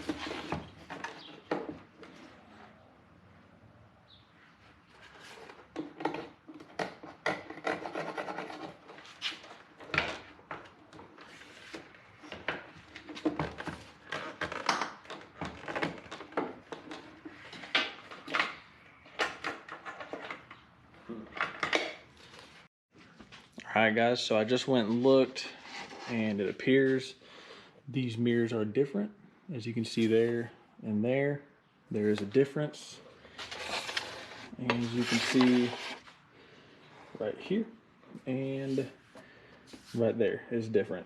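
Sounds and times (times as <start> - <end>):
rubbing scrapes: 33.4 - 36.1.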